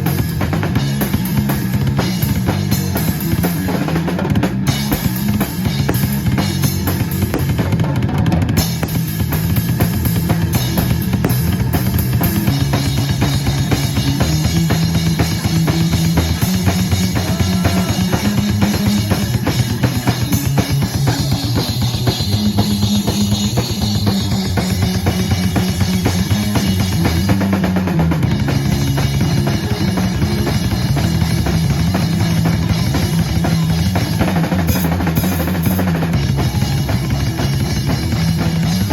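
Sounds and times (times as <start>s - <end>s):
bass line: 0.0s - 38.9s
drum kit: 0.0s - 38.9s
live rock band playing: 0.0s - 38.9s.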